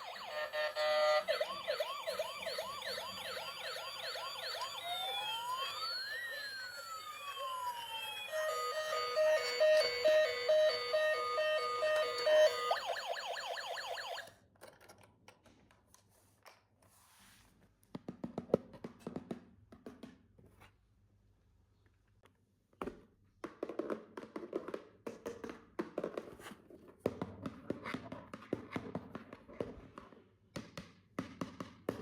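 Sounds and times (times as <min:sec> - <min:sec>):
toy police siren: 0:00.0 - 0:14.4.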